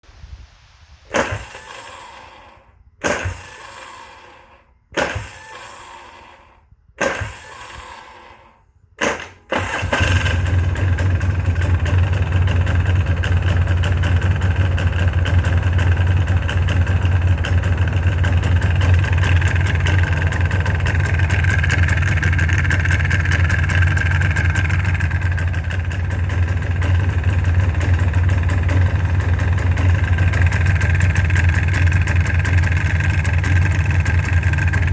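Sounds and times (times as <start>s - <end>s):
engine cranking and running: 1.2s - 34.9s
engine knocking: 10.0s - 34.9s.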